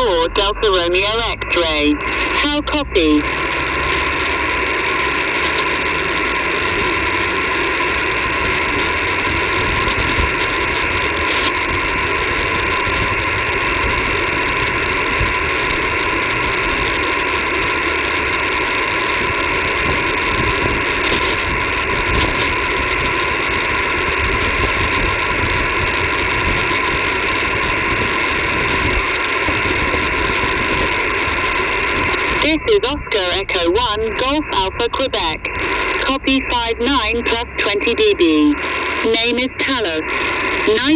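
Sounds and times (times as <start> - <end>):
radio static hiss: 0.0 - 40.9.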